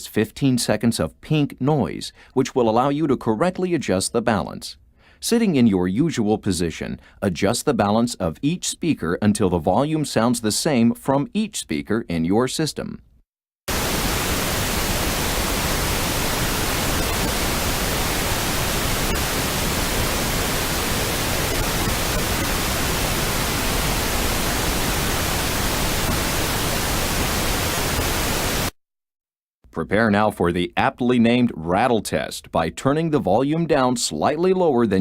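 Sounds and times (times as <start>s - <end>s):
pink noise test signal: 13.7s - 28.8s.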